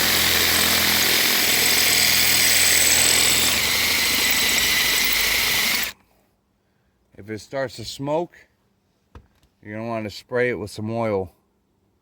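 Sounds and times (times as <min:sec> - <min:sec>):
electric drill grinding into steel: 0:00.0 - 0:06.0.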